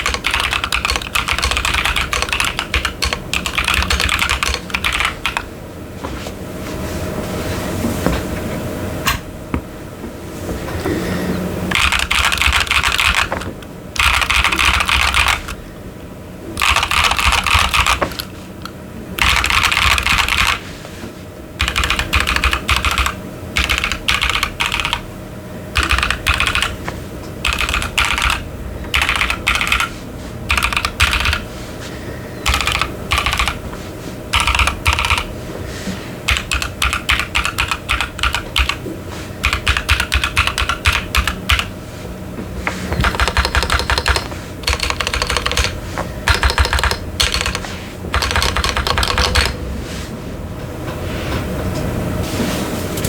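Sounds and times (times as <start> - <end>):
mechanical keyboard typing: 0.0 - 5.5, 11.7 - 15.6, 16.6 - 20.6, 21.6 - 25.0, 25.8 - 29.9, 30.5 - 31.4, 32.4 - 33.6, 34.3 - 35.3, 36.3 - 38.8, 39.4 - 41.7, 42.9 - 49.6.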